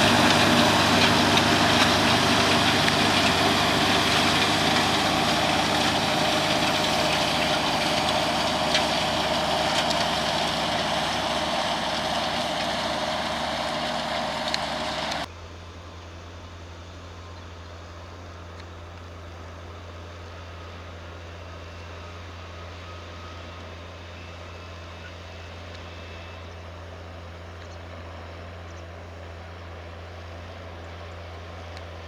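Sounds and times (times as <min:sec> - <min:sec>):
tractor engine droning: 0:00.0 - 0:15.3.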